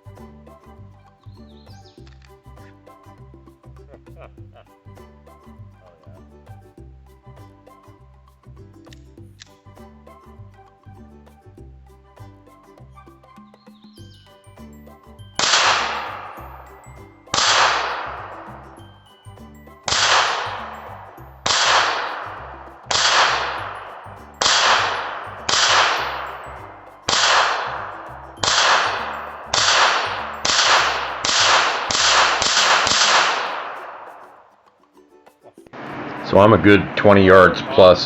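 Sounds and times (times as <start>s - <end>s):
pistol shots ringing: 15.4s - 16.4s, 17.3s - 18.3s, 19.9s - 20.8s, 21.4s - 22.3s, 22.9s - 23.8s, 24.4s - 26.2s, 27.1s - 34.0s.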